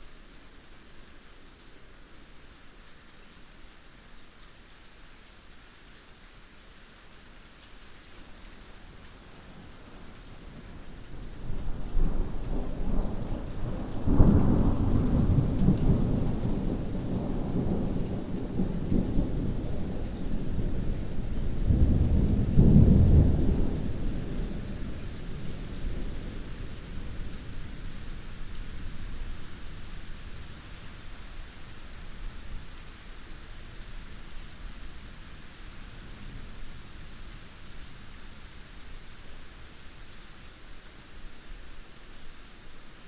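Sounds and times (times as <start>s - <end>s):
heavy rain: 0.0s - 43.0s
rolling thunder: 11.4s - 30.0s.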